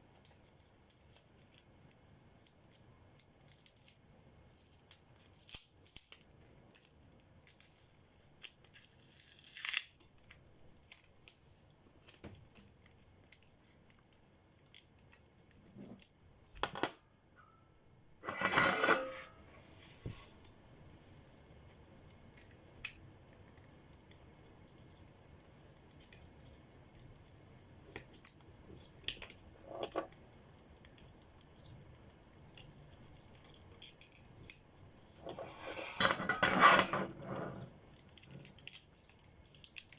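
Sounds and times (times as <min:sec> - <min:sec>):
scraping tearing sound: 0:08.6 - 0:10.0
tools handled at a workbench: 0:18.2 - 0:20.6, 0:35.2 - 0:39.0.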